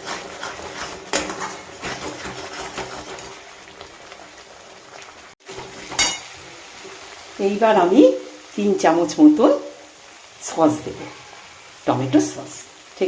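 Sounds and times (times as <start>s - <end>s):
spatula clinking: 0.0s - 3.3s, 5.5s - 6.5s
spatula scraping in pan: 0.0s - 4.4s, 5.4s - 7.3s, 10.6s - 11.9s
faint oil sizzle: 0.0s - 13.0s.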